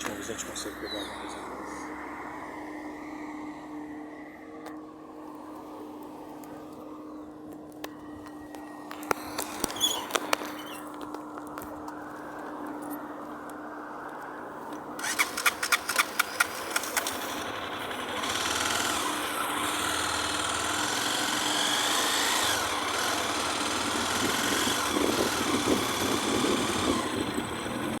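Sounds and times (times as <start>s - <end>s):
whining motor engine: 14.8s - 28.0s
sharp clicks: 15.0s - 17.5s.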